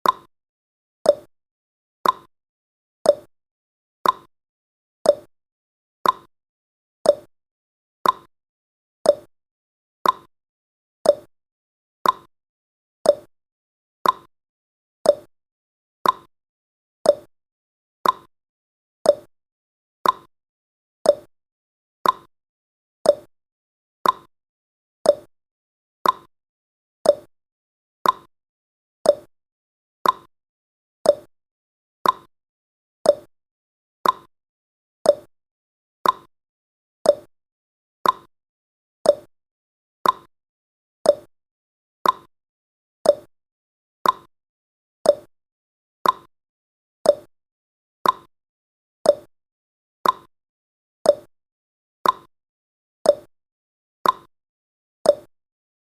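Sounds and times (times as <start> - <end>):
clock ticking: 34.0 - 34.3, 38.0 - 38.3, 40.0 - 40.3, 44.0 - 44.3, 46.0 - 46.3, 50.0 - 50.3.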